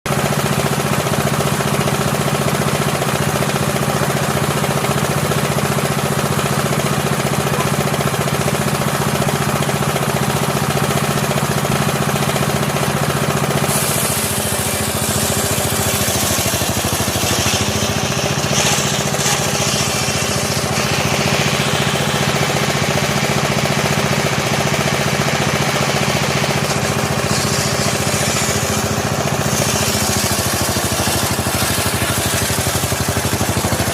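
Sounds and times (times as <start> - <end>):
sawmill saw running: 0.1 - 33.9
saw blade hissing through wood: 13.5 - 22.7, 26.3 - 33.9.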